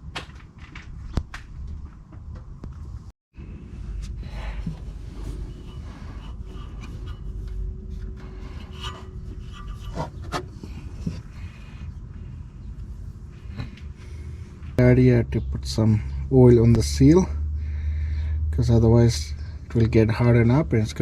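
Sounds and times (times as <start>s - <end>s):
hands rubbing on oil filter: 4.0s - 12.0s.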